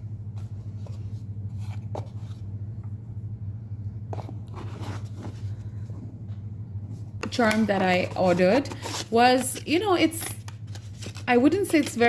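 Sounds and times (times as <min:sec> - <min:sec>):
low electrical hum: 0:00.0 - 0:12.0
packaging rustling and scraping: 0:04.2 - 0:05.9, 0:07.2 - 0:12.0.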